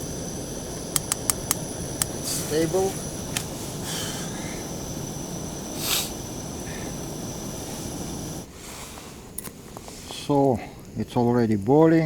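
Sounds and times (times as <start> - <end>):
gas stove burner running: 0.0 - 8.5
short hiss: 0.0 - 10.8.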